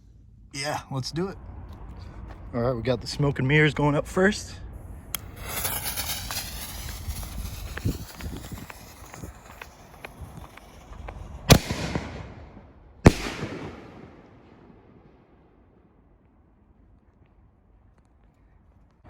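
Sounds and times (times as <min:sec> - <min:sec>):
firework bangs echoing: 0:05.2 - 0:15.4.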